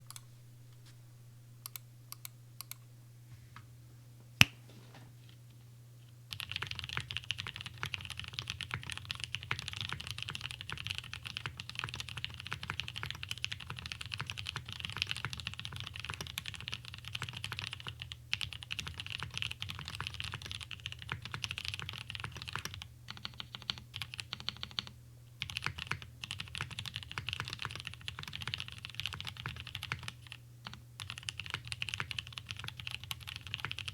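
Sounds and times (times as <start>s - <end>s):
steady low hum: 0.0s - 15.2s
typing on mechanical keyboard: 6.3s - 33.9s.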